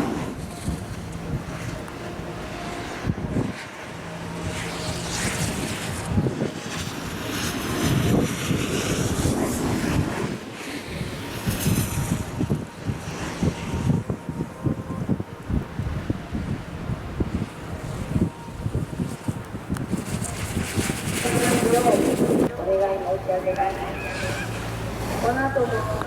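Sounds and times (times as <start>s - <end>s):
wind buffeting microphone: 0.0s - 26.0s
skis carving on snow: 19.8s - 22.5s.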